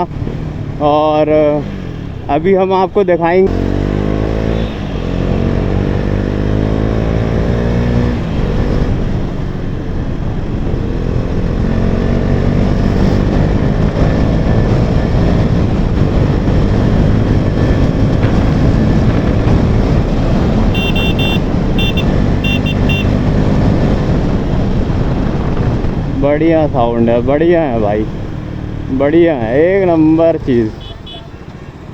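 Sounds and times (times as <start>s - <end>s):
motorcycle engine accelerating: 3.4s - 31.9s
short beeps: 20.8s - 23.1s.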